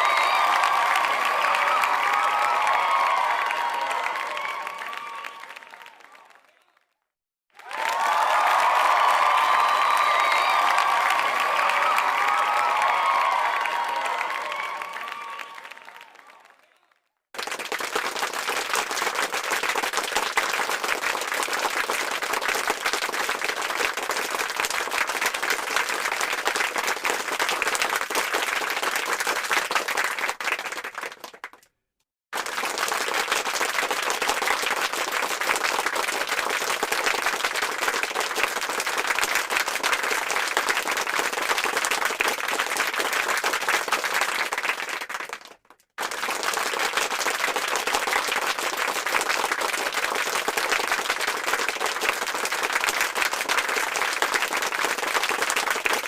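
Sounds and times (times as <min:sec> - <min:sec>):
crowd noise: 0:00.0 - 0:06.8, 0:07.6 - 0:16.9
crowd applauding: 0:00.0 - 0:31.7, 0:32.3 - 0:56.0.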